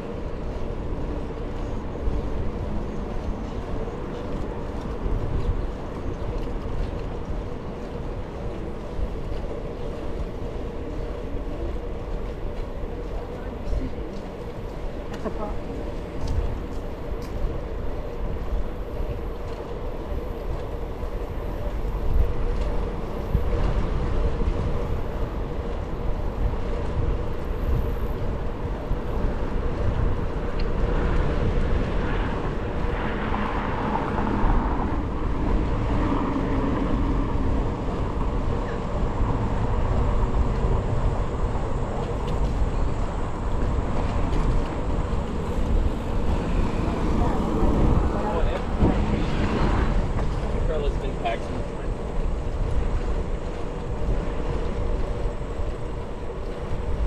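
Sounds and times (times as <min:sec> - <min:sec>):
wind rushing over microphone: 0:00.0 - 0:57.0.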